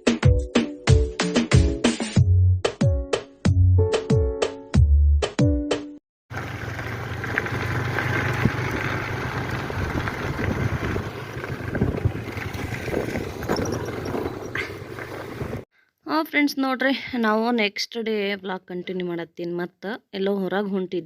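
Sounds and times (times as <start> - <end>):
low motor hum: 6.3 - 15.6
outdoor background noise: 6.3 - 15.7.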